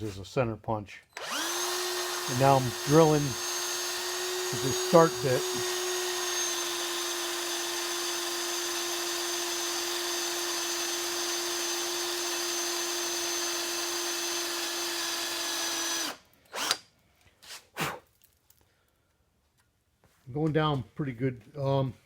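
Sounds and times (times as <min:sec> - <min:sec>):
electric drill running: 0:01.2 - 0:16.8.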